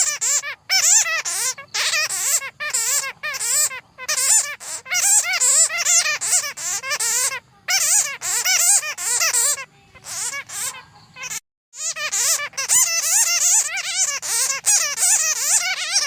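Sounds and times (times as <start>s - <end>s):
bats chattering: 0.0s - 16.0s.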